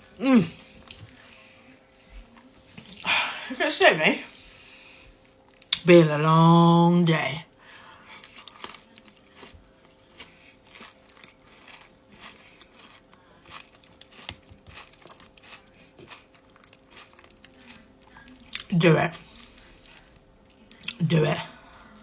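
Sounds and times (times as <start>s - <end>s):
person chewing food: 7.7s - 22.0s.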